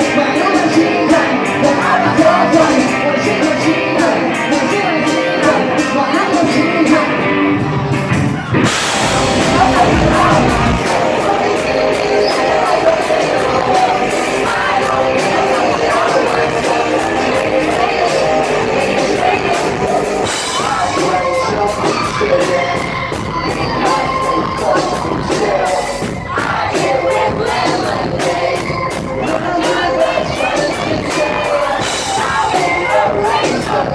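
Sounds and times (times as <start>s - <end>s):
crowd yelling: 0.0s - 33.9s
lead vocal singing: 0.0s - 33.9s
live rock band playing: 0.0s - 33.9s.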